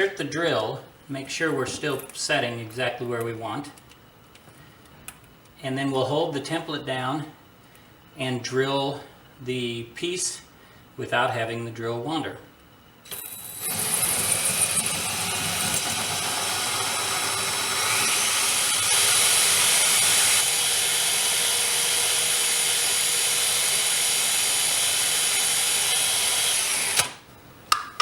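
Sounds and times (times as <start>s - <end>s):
drill grinding into glass: 13.1s - 27.2s.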